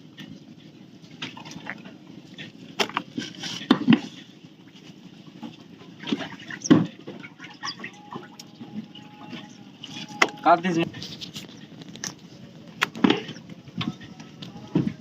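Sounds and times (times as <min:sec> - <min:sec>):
water splashing: 0:05.3 - 0:10.6.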